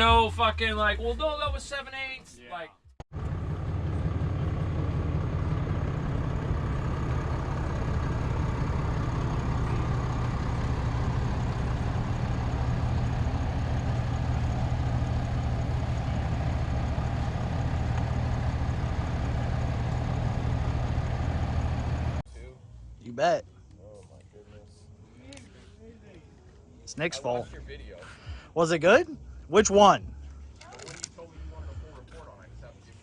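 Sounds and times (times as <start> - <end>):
outboard motor running: 3.2 - 22.2.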